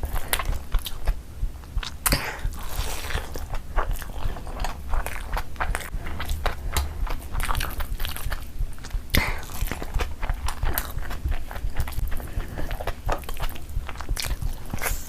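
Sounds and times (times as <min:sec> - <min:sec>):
person biting and chewing: 0:00.0 - 0:15.0
wet mouth clicks: 0:03.3 - 0:15.0.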